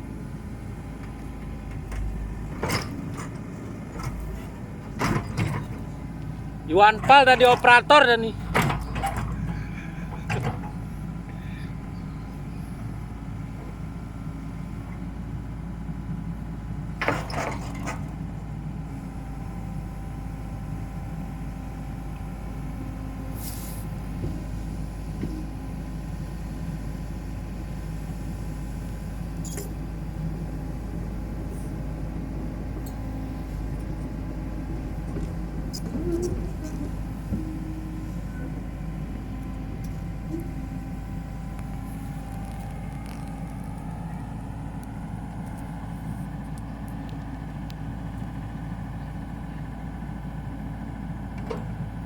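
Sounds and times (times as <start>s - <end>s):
excavator diesel engine running: 0.0s - 52.0s
brief hiss: 23.4s - 23.9s
short clatter: 35.1s - 37.6s.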